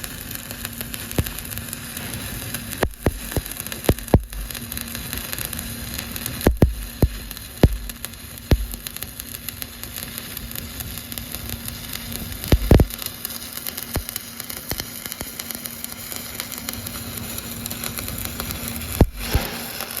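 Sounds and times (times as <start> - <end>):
welding arc crackling: 0.0 - 20.0
welding arc pops: 0.0 - 20.0
low hum: 2.8 - 4.6.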